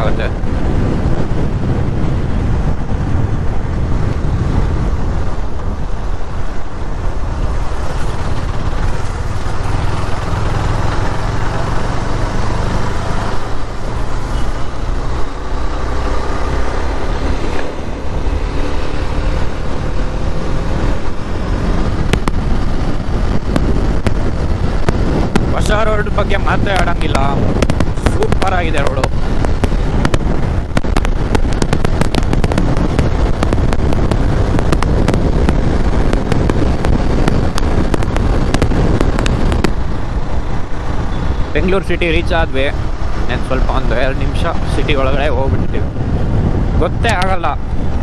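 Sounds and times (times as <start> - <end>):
motorcycle wind and road noise: 0.0 - 48.0
passing traffic: 0.0 - 48.0.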